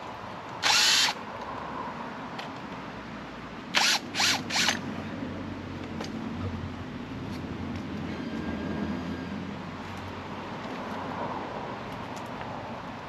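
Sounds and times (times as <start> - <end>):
power drill whirring: 0.6 - 1.2, 3.8 - 4.8.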